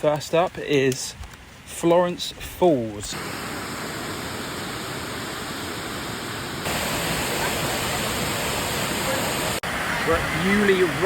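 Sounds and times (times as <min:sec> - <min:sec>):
waterfall rushing: 0:03.1 - 0:11.0.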